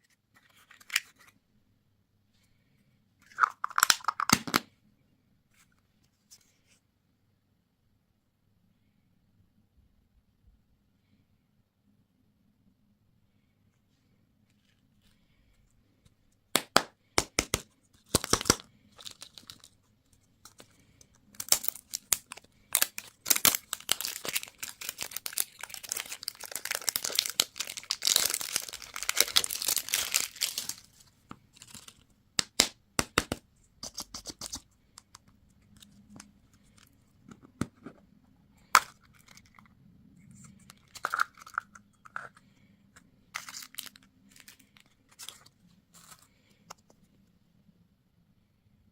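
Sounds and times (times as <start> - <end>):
plastic wrappers crinkling: 18.1 - 19.8, 20.4 - 32.0, 43.3 - 46.5.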